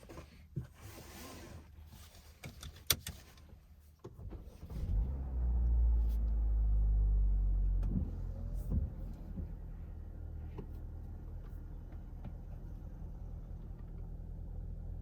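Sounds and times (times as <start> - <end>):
low car engine hum: 3.5 - 15.0.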